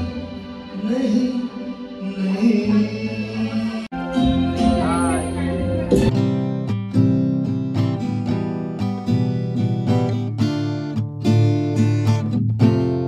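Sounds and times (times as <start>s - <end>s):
strummed acoustic guitar: 3.9s - 13.0s.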